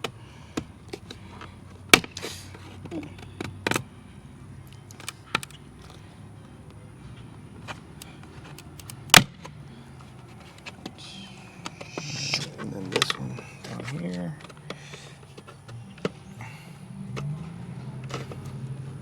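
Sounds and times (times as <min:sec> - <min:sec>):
plastic clips snapping: 0:00.0 - 0:03.9, 0:04.7 - 0:06.0, 0:07.6 - 0:16.2.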